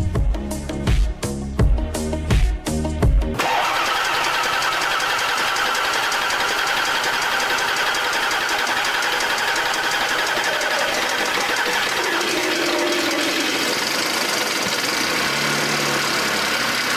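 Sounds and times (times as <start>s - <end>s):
car engine idling: 3.4s - 16.9s.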